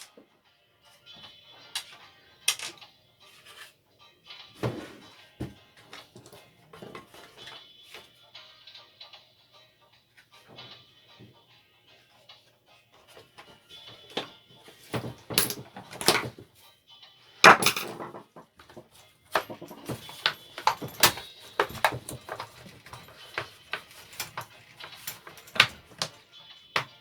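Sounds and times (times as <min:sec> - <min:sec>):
tools and engine parts knocking: 0:14.9 - 0:16.4, 0:17.5 - 0:26.2.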